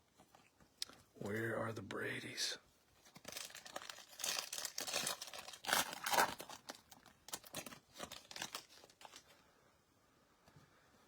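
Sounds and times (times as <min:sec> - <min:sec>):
plastic wrapper crinkling and tearing: 0:03.0 - 0:09.3.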